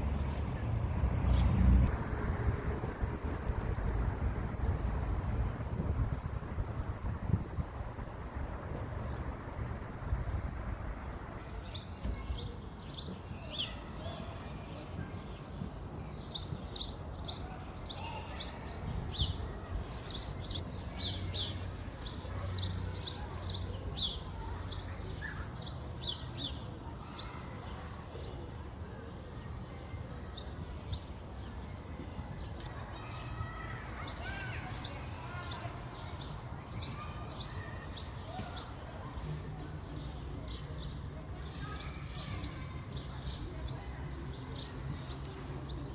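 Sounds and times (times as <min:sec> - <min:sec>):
wind rumble on microphone: 0:01.1 - 0:11.4
small birds chirping: 0:04.6 - 0:29.6, 0:32.4 - 0:45.9.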